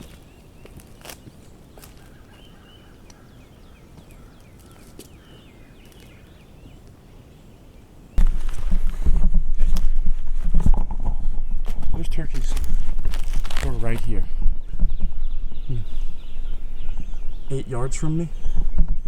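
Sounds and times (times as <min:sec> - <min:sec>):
footsteps in leaf litter: 0:00.0 - 0:02.6, 0:08.2 - 0:09.1, 0:12.3 - 0:14.1
songbird chirps: 0:00.0 - 0:08.7, 0:11.1 - 0:19.0
wind buffeting microphone: 0:08.1 - 0:19.0.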